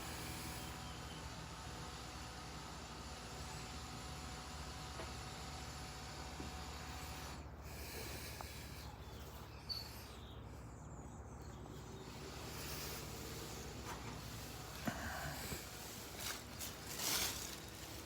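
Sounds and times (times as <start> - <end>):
computer fan hissing: 12.0 - 18.0.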